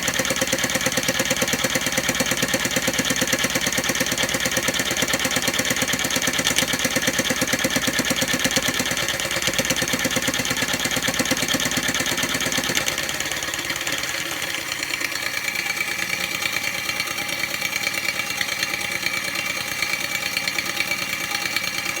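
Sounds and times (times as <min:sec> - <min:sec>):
scroll saw motor clattering: 0:00.1 - 0:14.1.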